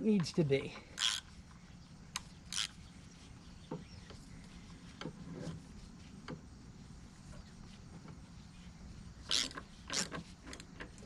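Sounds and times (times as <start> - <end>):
tools and metal parts clicking: 9.2 - 11.0.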